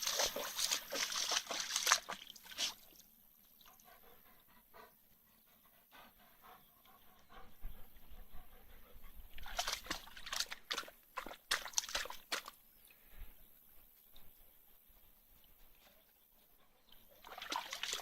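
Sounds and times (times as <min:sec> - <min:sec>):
dog splashing in water: 0:00.0 - 0:03.0, 0:09.4 - 0:12.6, 0:17.2 - 0:18.0.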